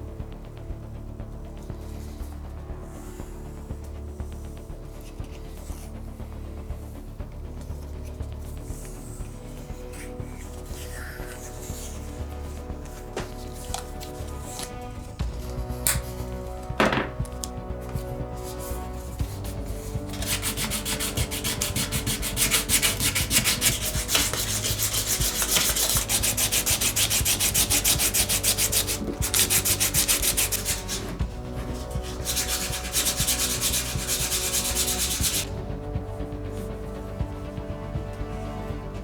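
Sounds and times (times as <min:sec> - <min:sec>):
sandpaper rubbing: 0:08.7 - 0:35.5.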